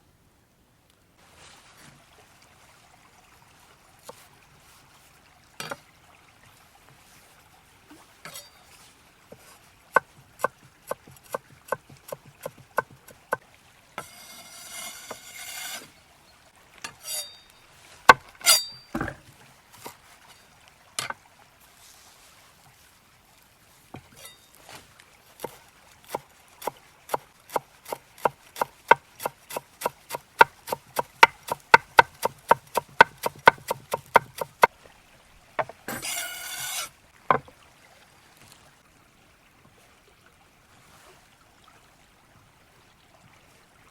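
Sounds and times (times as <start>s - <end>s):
knife chopping on wooden board: 10.0s - 13.4s, 27.1s - 34.7s
knocks: 37.3s - 37.5s.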